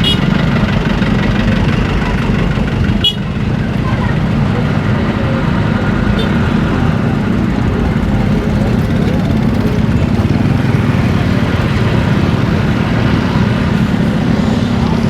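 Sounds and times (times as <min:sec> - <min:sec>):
excavator working: 0:00.0 - 0:15.0
vehicles on road: 0:00.0 - 0:15.0.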